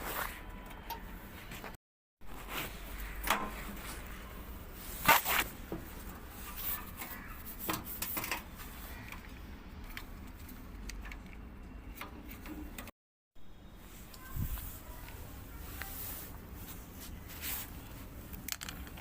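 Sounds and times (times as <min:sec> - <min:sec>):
clicks and knocks of parts: 0:18.3 - 0:19.0.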